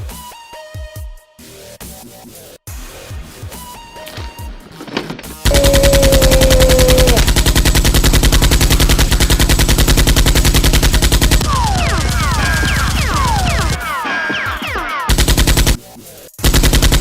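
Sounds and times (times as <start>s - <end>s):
machine-gun fire: 5.4s - 13.8s, 14.6s - 15.8s, 16.4s - 17.0s
short falling whistles: 5.5s - 7.2s.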